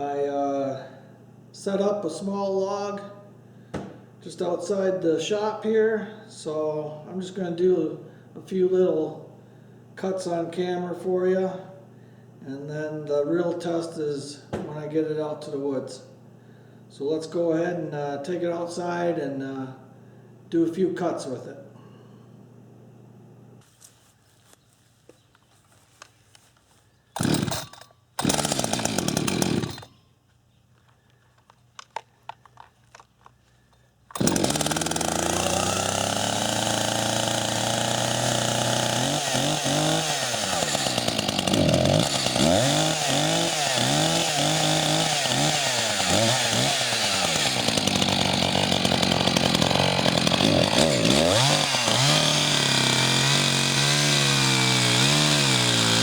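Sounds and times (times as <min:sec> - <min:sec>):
chainsaw engine revving: 0:27.2 - 0:29.9, 0:34.1 - 0:56.0.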